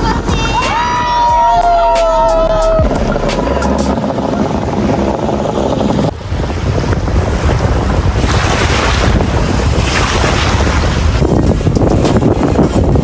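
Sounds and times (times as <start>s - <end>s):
low engine rumble: 0.0s - 8.1s
rushing water: 0.0s - 13.0s
wind buffeting microphone: 0.0s - 13.0s.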